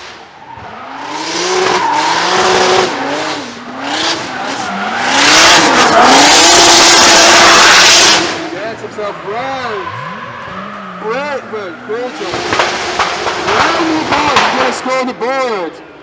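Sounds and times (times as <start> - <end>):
car engine revving: 0.0 - 16.0
tyre squeal: 0.4 - 14.4.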